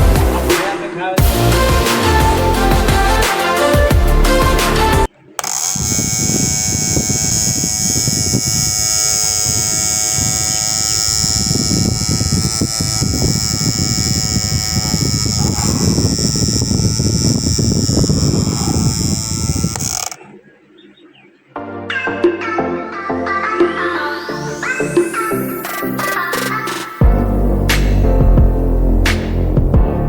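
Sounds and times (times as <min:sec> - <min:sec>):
small electric motor whining: 0:01.5 - 0:20.3, 0:24.4 - 0:29.6.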